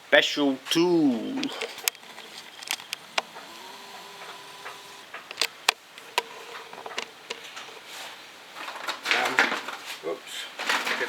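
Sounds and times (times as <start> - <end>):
objects clicking and knocking: 1.4 - 7.9.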